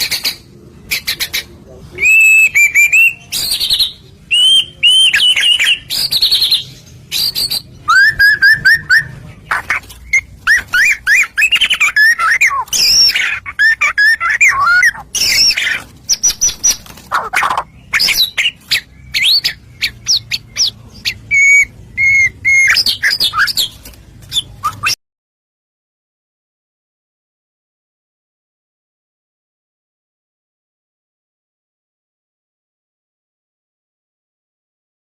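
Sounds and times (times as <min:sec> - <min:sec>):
songbird chirps whistles and trills: 0:00.0 - 0:25.0.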